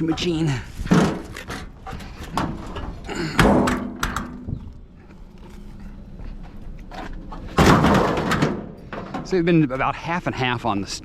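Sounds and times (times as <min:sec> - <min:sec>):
heavy thuds on metal cabinet: 0:07.6 - 0:09.2.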